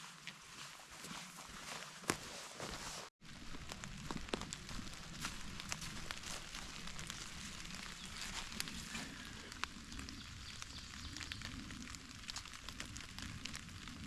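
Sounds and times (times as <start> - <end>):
rain pattering: 3.2 - 14.0.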